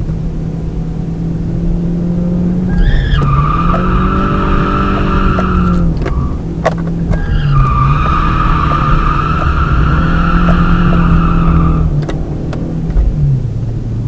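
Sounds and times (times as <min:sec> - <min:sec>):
car engine running: 0:00.0 - 0:14.0
tyres squealing: 0:02.7 - 0:12.0.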